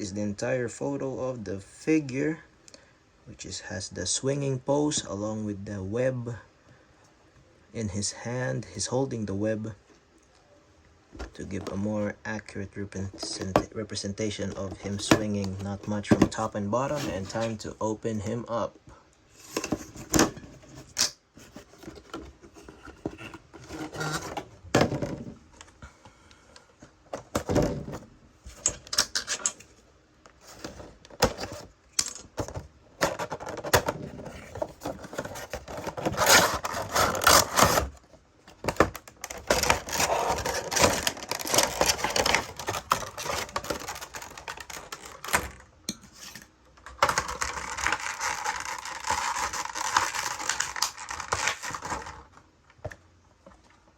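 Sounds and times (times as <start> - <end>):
packaging scraping and crinkling: 13.0 - 13.7, 14.3 - 17.6, 19.4 - 25.2, 30.4 - 31.8, 32.4 - 52.4.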